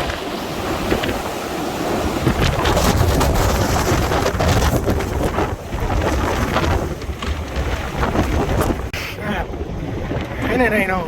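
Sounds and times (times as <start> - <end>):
strong wind gusts: 0.0 - 11.0
wind buffeting microphone: 0.0 - 11.0.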